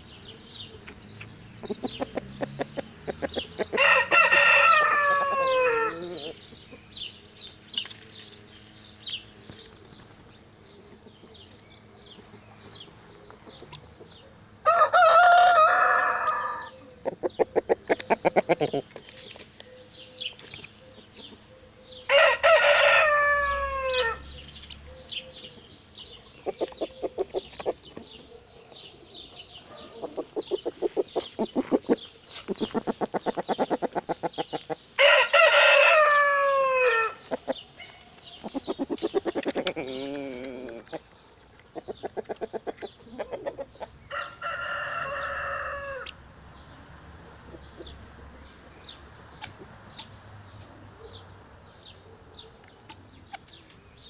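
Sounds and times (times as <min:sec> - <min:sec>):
chickens clucking: 0:00.0 - 0:53.8
rooster crowing: 0:03.7 - 0:06.4, 0:14.6 - 0:16.9, 0:22.1 - 0:24.3, 0:35.0 - 0:37.2, 0:44.1 - 0:46.2.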